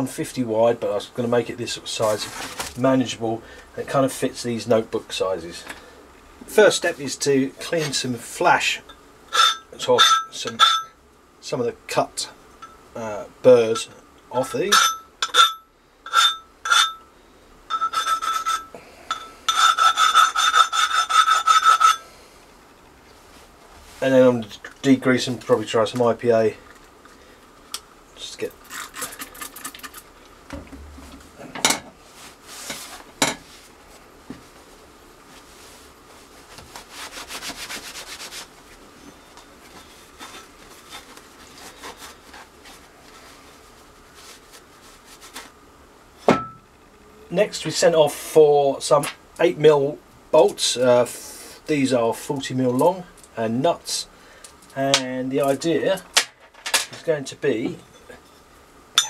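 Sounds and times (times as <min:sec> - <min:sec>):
metal plate ringing under scraping: 0:09.3 - 0:11.0, 0:14.5 - 0:17.0, 0:17.7 - 0:22.0
wiping a metal plate: 0:35.3 - 0:38.8.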